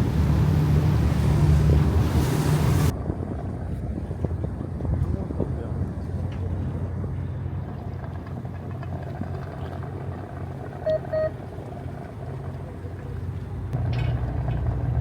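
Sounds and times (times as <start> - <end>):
boat engine humming: 0.0 - 4.6, 5.2 - 15.0
short electronic beeps: 10.9 - 11.3.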